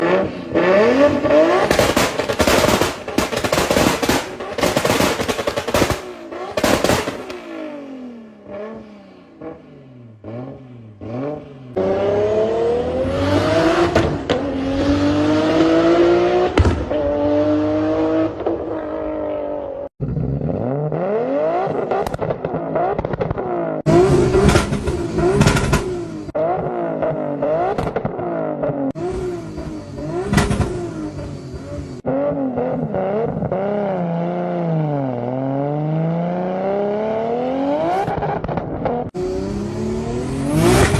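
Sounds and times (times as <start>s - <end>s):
car engine revving and accelerating: 0.0s - 40.9s
exhaust bangs and crackles: 0.5s - 8.6s, 21.7s - 33.6s, 38.0s - 40.9s.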